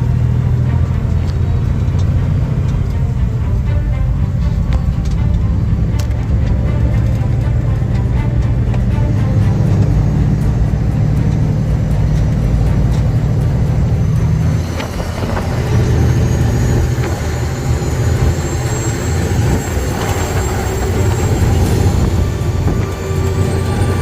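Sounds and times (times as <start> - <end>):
truck diesel engine running: 0.0 - 24.0.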